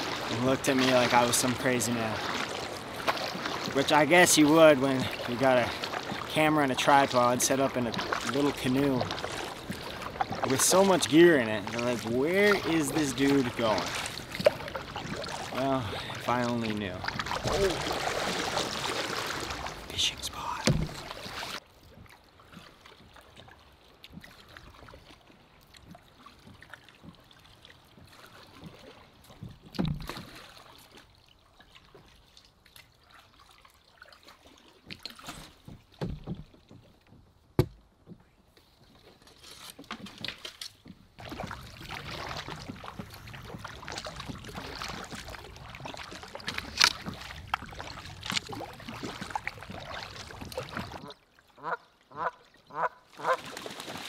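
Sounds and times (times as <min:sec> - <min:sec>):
paddle strokes: 0:00.0 - 0:54.0
water sloshing: 0:00.0 - 0:54.0
knocks against canoe hull: 0:35.6 - 0:36.9, 0:37.5 - 0:38.2.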